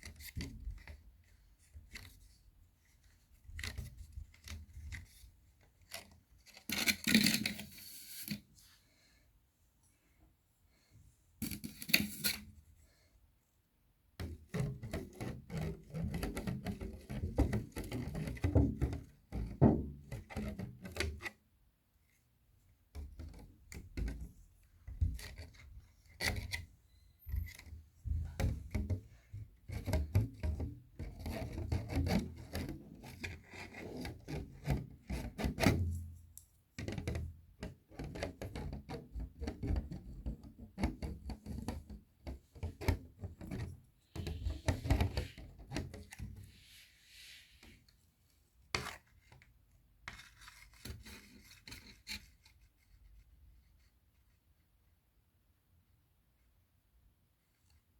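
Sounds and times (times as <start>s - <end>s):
rubbing and scratching on plastic box: 38.2s - 48.0s, 50.1s - 54.0s.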